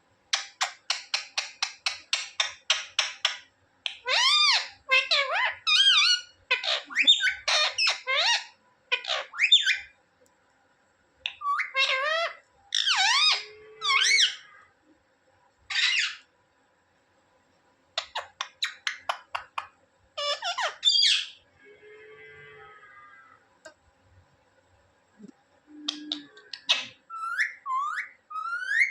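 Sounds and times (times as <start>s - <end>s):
parakeet chirps: 0.3s - 10.0s, 11.2s - 14.6s, 15.7s - 16.3s, 18.0s - 21.4s, 25.8s - 28.9s
parakeet squawking: 0.4s - 9.9s, 11.3s - 14.6s, 15.7s - 16.3s, 18.0s - 21.4s, 25.9s - 28.9s.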